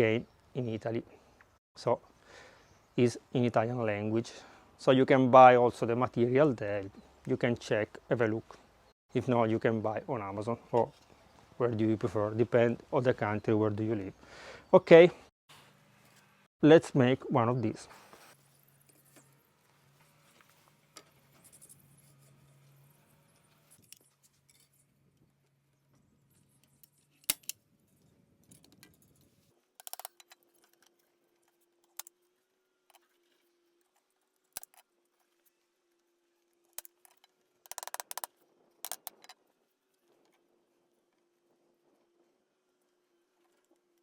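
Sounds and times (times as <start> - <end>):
clicks and snips of hand work: 26.4 - 27.6, 28.5 - 35.6, 36.5 - 39.4.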